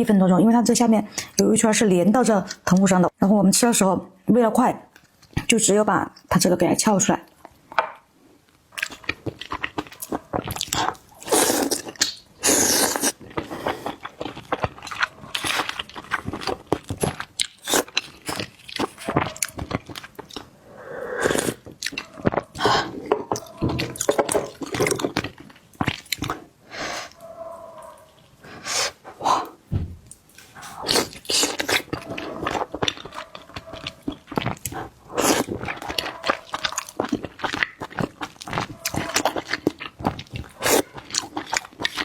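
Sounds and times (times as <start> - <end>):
crunching and chewing: 8.7 - 20.5, 21.2 - 28.7, 30.3 - 42.0.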